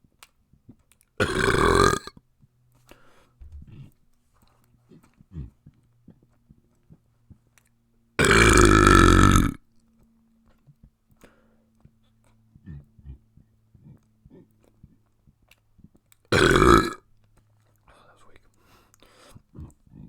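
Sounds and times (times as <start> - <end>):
person burping: 1.2 - 2.1, 8.2 - 9.6, 16.3 - 17.0.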